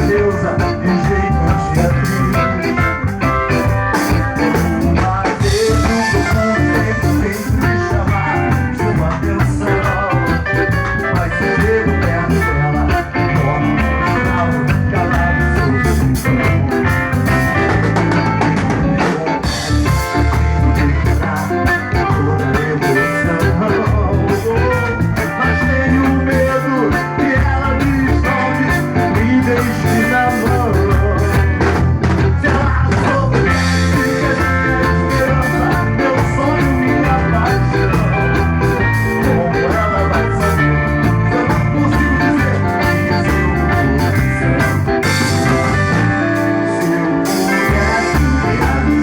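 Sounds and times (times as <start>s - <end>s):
live band playing: 0.0s - 49.0s.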